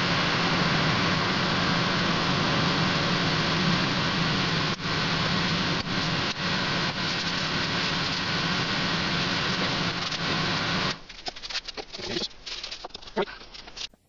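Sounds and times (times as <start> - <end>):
extraction fan running: 0.0 - 11.0.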